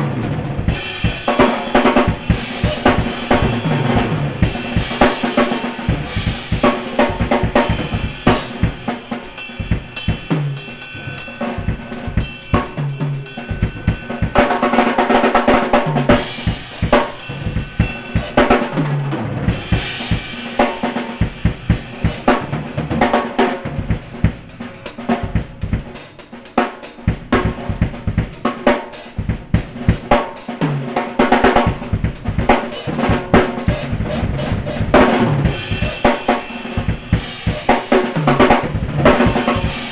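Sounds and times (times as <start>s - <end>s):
cymbals ringing: 0.0s - 26.4s, 31.6s - 39.9s
snare and tom strokes: 29.8s - 39.9s.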